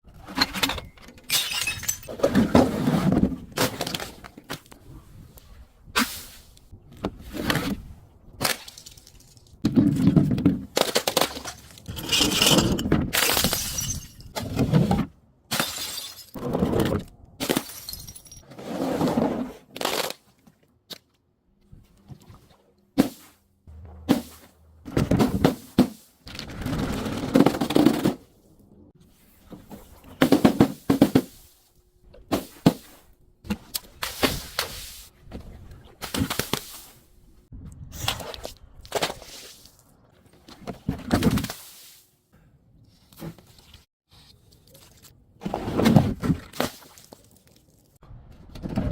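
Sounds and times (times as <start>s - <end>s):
glass bottles shattering: 0.6s - 2.2s, 11.9s - 14.4s, 15.5s - 16.4s, 17.5s - 18.4s.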